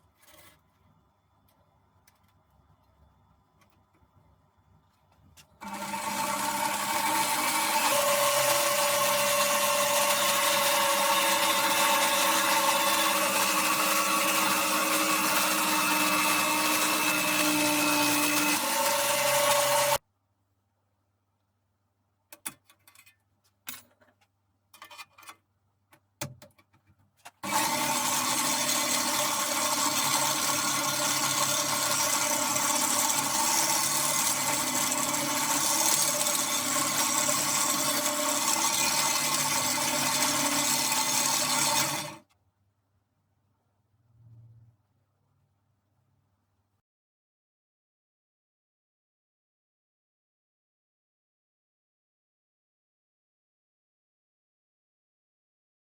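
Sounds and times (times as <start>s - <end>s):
electric jigsaw motor whirring: 5.6s - 20.0s, 27.4s - 42.3s.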